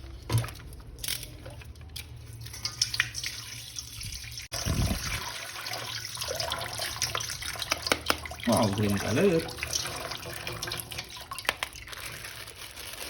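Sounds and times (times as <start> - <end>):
tap water splashing into sink: 6.0 - 11.8.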